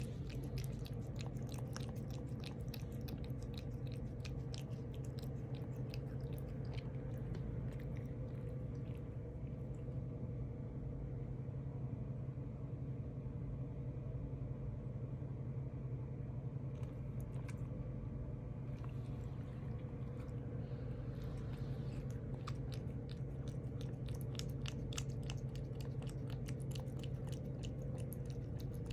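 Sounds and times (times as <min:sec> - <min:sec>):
cat chewing crunchy food: 0:00.0 - 0:09.9, 0:16.8 - 0:17.8, 0:18.7 - 0:28.9
low hum: 0:00.0 - 0:28.9.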